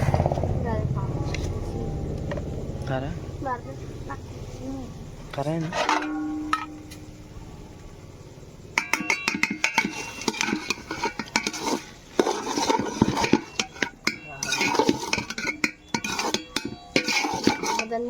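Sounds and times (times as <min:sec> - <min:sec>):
metal spoon scraping metal pot: 0:05.5 - 0:07.1, 0:08.7 - 0:18.0.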